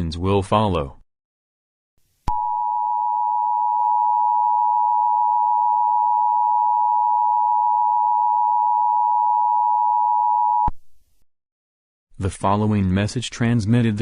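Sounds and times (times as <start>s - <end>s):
two-tone electronic beep: 2.3s - 10.7s.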